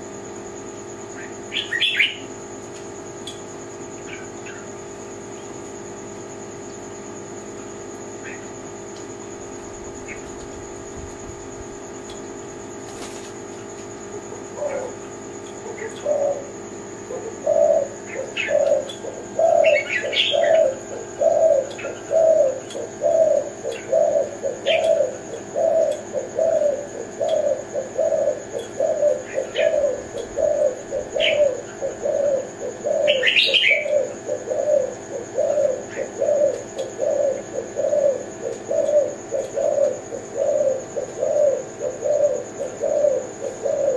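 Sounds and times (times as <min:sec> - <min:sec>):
dove cooing: 0:00.0 - 0:43.9
small birds chirping: 0:01.0 - 0:02.3, 0:03.2 - 0:05.6, 0:09.9 - 0:11.0, 0:14.3 - 0:43.9.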